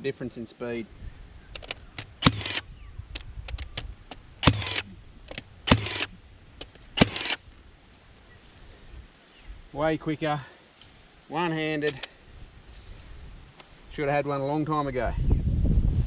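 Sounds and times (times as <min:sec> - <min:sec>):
tool handling clicks: 0:01.5 - 0:07.6, 0:11.8 - 0:12.2
stapler whir: 0:01.6 - 0:02.7, 0:04.4 - 0:06.2, 0:07.0 - 0:07.4
stapler shots into wood: 0:01.6 - 0:03.7, 0:04.4 - 0:07.4.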